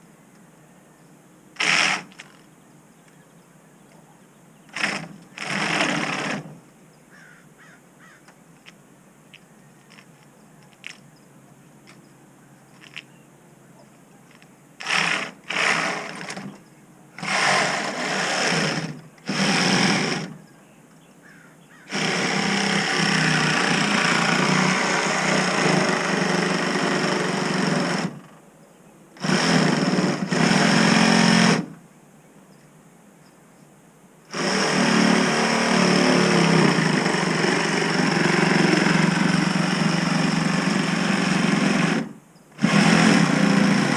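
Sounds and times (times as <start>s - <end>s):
power tool running in bursts: 1.6s - 2.2s, 4.7s - 6.5s, 14.8s - 16.5s, 17.2s - 20.4s, 21.9s - 28.2s, 29.2s - 31.7s, 34.3s - 43.9s.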